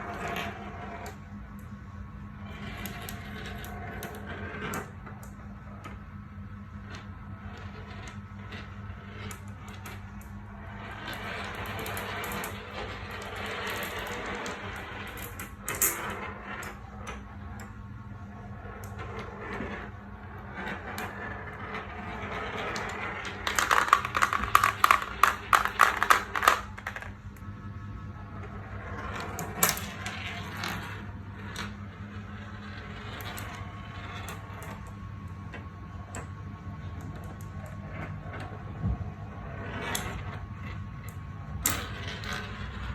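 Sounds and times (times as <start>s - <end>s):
steady low hum: 0.0s - 42.9s
marbles rattling down plastic tracks: 6.8s - 17.8s, 18.8s - 27.3s, 28.8s - 34.9s, 41.1s - 42.9s.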